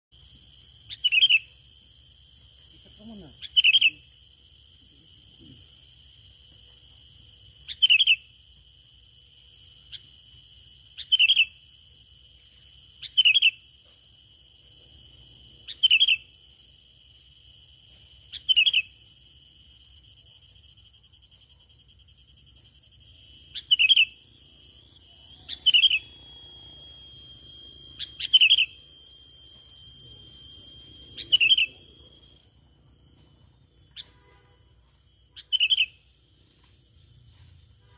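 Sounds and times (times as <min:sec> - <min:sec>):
bird chirp call: 0:03.1 - 0:04.1, 0:23.5 - 0:32.5
high whistling tone: 0:23.4 - 0:32.5.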